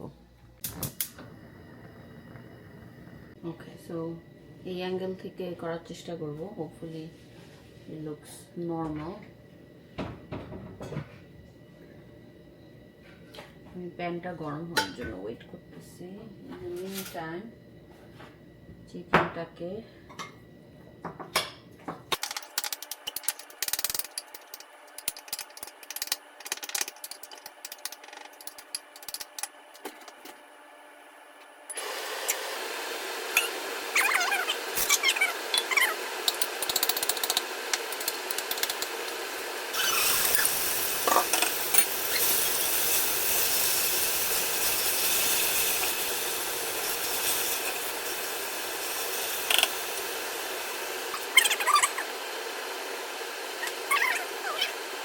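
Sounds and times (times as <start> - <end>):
vegetables sizzling in pan: 31.7 - 55.0.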